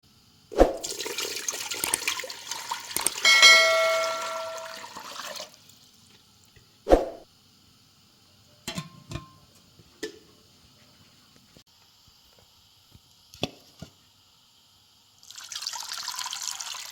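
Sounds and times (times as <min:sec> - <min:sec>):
water pouring and splashing: 0:00.6 - 0:05.8
metal clang ringing: 0:03.2 - 0:04.8.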